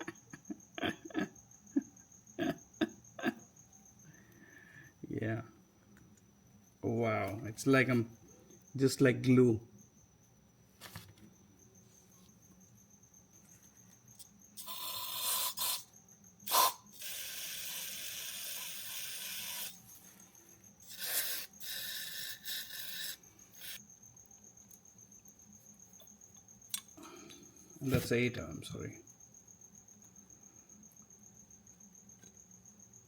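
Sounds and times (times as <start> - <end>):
spray hissing: 16.5 - 19.8.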